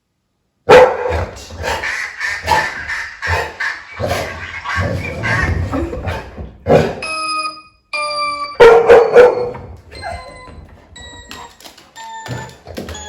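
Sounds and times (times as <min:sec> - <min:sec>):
dog barking: 0:00.7 - 0:05.5, 0:08.6 - 0:10.1
two-note doorbell chime: 0:07.0 - 0:13.0.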